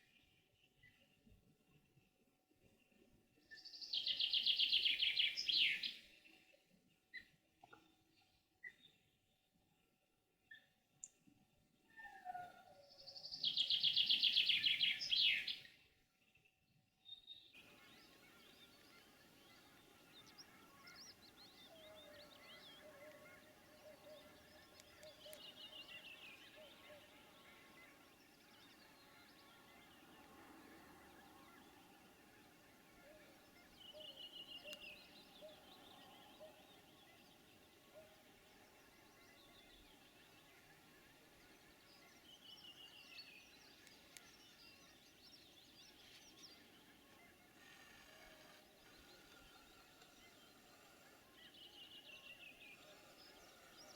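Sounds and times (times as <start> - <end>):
small birds chirping: 2.6 - 9.4, 12.0 - 53.9
light outdoor hiss: 13.1 - 15.7, 17.6 - 53.9.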